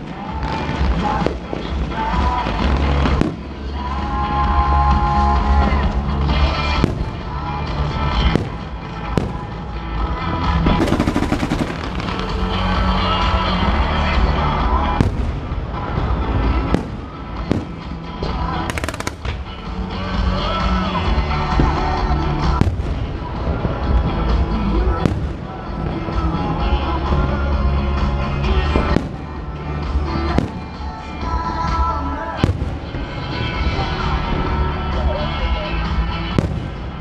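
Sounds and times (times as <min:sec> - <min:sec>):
fireworks crackling: 0:00.0 - 0:04.7, 0:06.5 - 0:09.8, 0:10.5 - 0:14.0, 0:14.9 - 0:20.3
loud music with steady bass: 0:00.0 - 0:37.0
fireworks bangs: 0:10.7 - 0:13.0, 0:15.0 - 0:18.0, 0:18.7 - 0:19.8.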